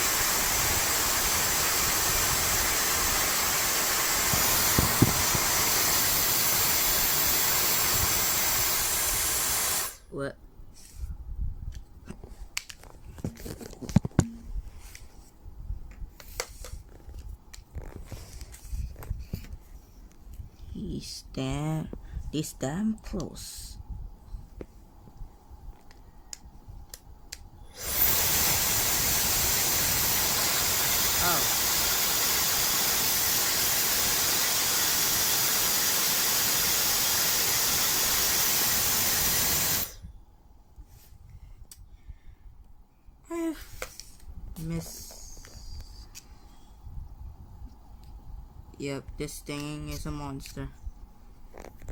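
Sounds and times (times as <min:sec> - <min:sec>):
electric blower running: 0:00.0 - 0:10.0, 0:27.8 - 0:39.9.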